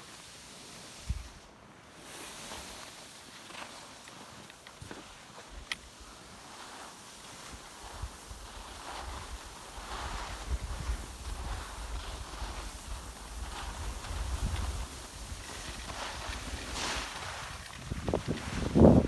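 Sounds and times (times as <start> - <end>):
skis sliding over snow: 0.0 - 19.0
wind buffeting microphone: 7.8 - 19.0.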